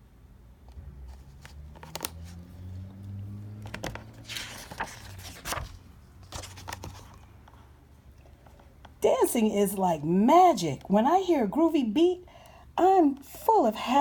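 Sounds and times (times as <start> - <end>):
book pages turning: 0.7 - 7.6.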